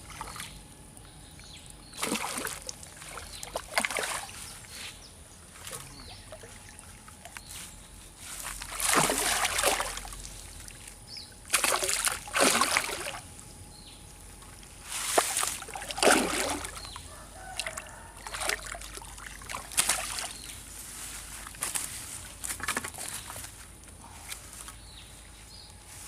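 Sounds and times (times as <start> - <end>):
paddle splashing in water: 8.7 - 10.1, 11.5 - 13.2, 15.0 - 16.8.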